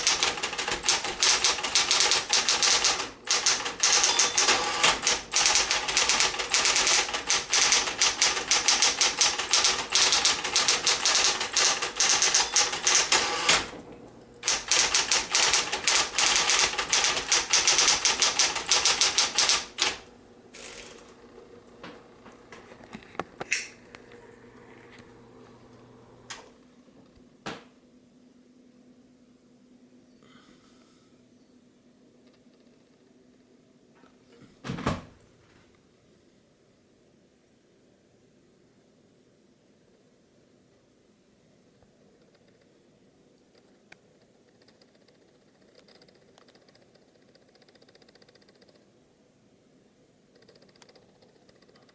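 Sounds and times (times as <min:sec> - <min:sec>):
electric typewriter keystrokes: 0:00.0 - 0:21.2
faint steady hum: 0:00.0 - 0:51.9
isolated clicks: 0:50.3 - 0:51.9.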